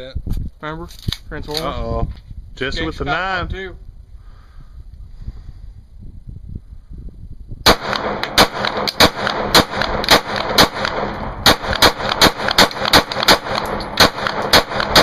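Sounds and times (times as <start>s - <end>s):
handgun shots echoing: 7.7s - 15.0s.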